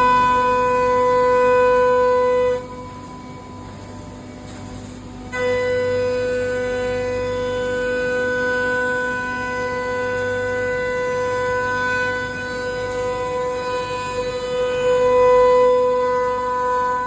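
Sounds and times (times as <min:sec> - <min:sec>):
low machine hum: 0:00.0 - 0:17.0
milling cutter high-pitched whine: 0:00.0 - 0:17.0.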